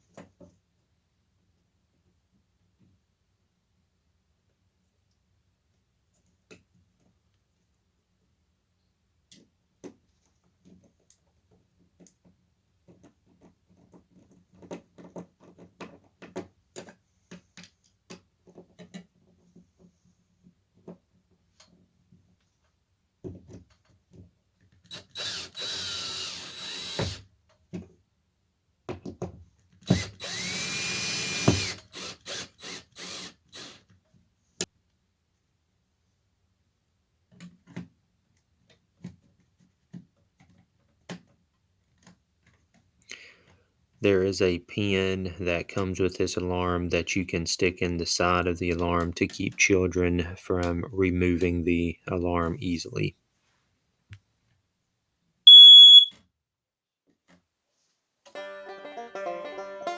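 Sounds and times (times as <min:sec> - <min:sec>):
power drill boring into drywall: 0:24.9 - 0:27.3, 0:29.8 - 0:33.8.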